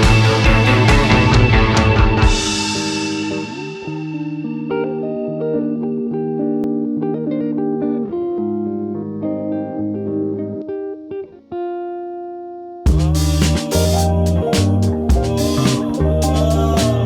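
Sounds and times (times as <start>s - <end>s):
background music of held notes: 12.9s - 17.0s.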